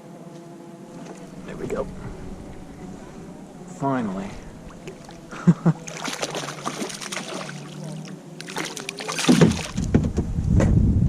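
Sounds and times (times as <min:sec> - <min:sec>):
water slapping kayak: 0:00.9 - 0:10.3
wind buffeting microphone: 0:01.0 - 0:05.9, 0:09.3 - 0:11.0
sharp knocks: 0:09.3 - 0:10.3.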